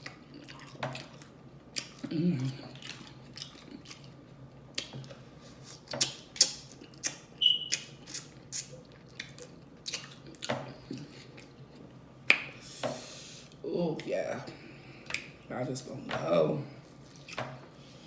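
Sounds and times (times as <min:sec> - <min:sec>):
lip smacks and chewing clicks: 0:00.0 - 0:02.1, 0:02.7 - 0:12.6.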